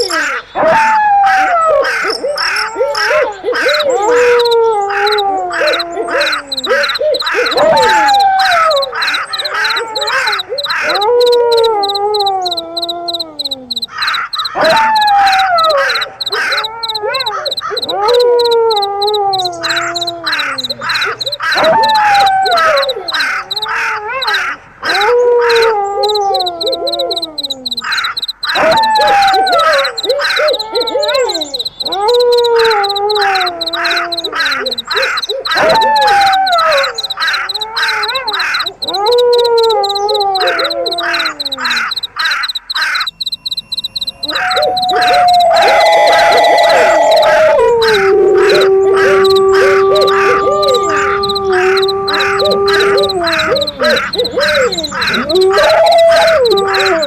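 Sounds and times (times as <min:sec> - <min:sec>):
falling howl-like call: 0:00.0 - 0:43.0, 0:44.0 - 0:57.0
crickets chirping: 0:00.0 - 0:57.0
harsh caw-like calls: 0:13.8 - 0:14.8, 0:19.6 - 0:24.6, 0:41.0 - 0:43.1.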